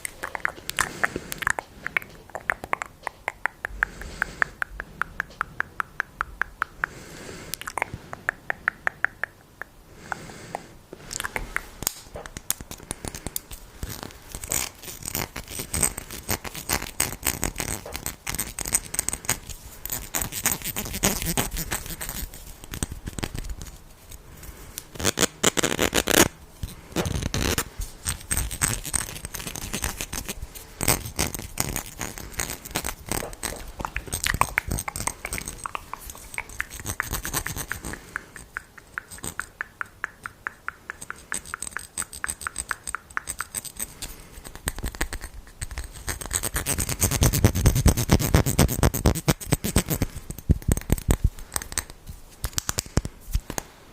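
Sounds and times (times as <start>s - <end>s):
close tapping: 0.2s - 9.8s
scratching and scraping: 11.1s - 53.7s.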